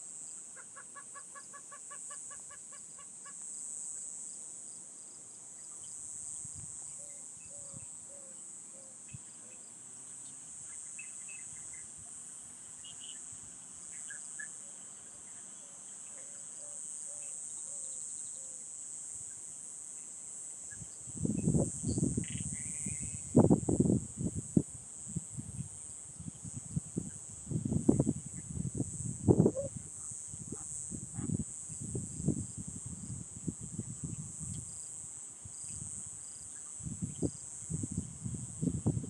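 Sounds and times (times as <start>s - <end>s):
crickets chirping: 0.0s - 39.0s.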